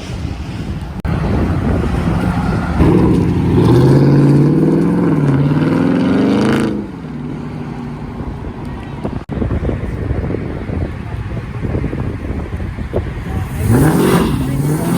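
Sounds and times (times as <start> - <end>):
car engine accelerating hard: 1.1 - 9.2, 11.7 - 14.9.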